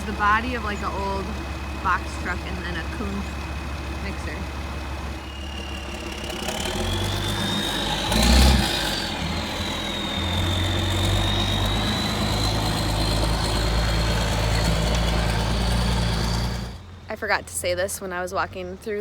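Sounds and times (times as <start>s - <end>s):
high whine: 0.0s - 16.8s
low engine surge: 0.0s - 17.5s
truck engine drone: 0.0s - 19.0s.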